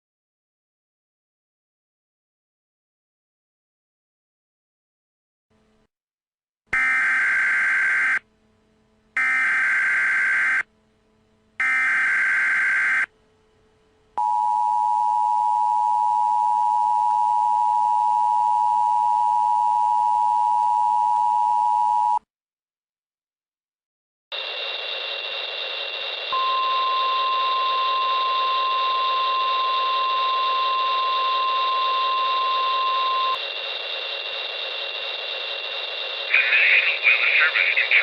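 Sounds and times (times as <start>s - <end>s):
two-tone attention signal: 26.3s - 33.4s
harsh data bursts: 33.3s - 38.0s.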